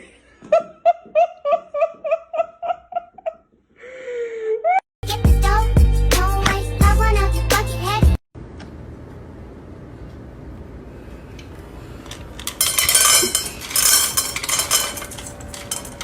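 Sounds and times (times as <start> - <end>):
tableware clattering and clinking: 12.5 - 16.0.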